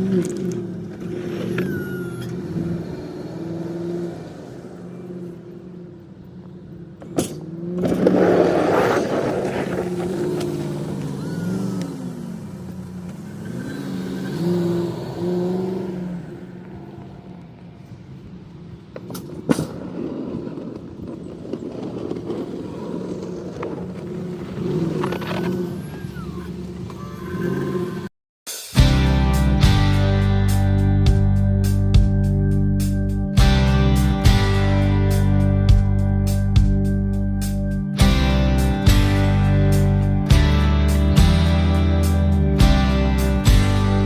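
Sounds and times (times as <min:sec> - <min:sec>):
vehicle engine revving: 0:00.0 - 0:17.4, 0:22.8 - 0:28.1
rush of scraping noise: 0:07.7 - 0:10.9.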